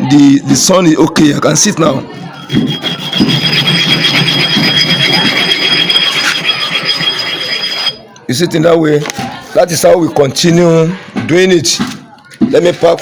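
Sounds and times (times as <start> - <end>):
stone scraping on iron bar: 2.0 - 8.1.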